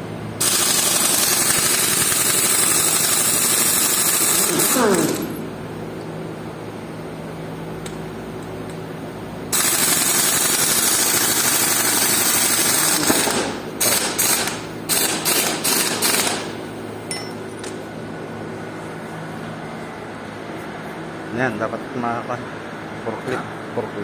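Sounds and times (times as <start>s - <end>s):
pneumatic impact wrench: 0.4s - 5.5s, 9.5s - 16.6s.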